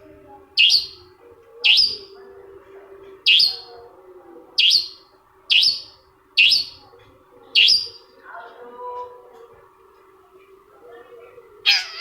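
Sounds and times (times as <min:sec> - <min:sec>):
shrike harsh calls: 0:11.7 - 0:12.0.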